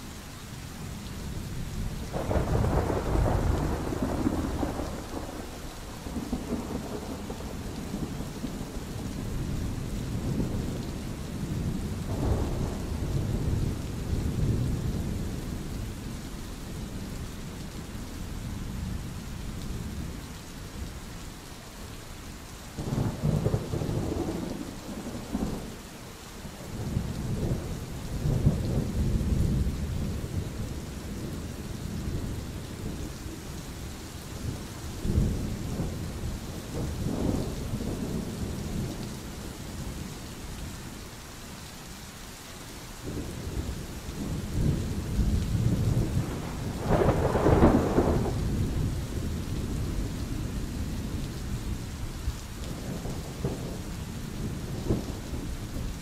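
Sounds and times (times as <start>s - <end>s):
steady rain: 0.0s - 56.0s
thunder rumbling: 1.9s - 16.0s, 22.8s - 25.8s, 26.5s - 33.5s, 34.4s - 40.1s, 43.0s - 56.0s.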